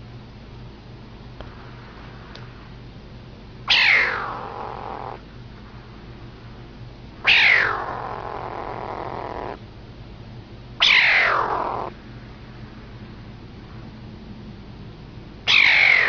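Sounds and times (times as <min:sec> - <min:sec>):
cat crying: 0:03.7 - 0:05.2, 0:07.2 - 0:09.6, 0:10.8 - 0:11.9, 0:15.5 - 0:16.0.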